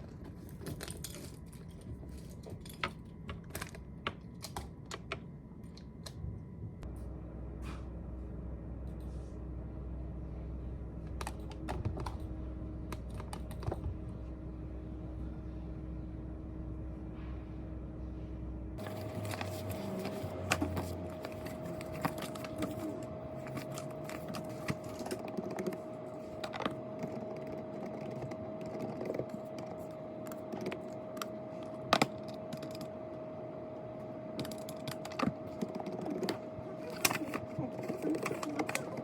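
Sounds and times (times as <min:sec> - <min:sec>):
steady background hum: 0:00.0 - 0:39.0
computer keyboard typing: 0:18.8 - 0:32.9, 0:34.4 - 0:39.0.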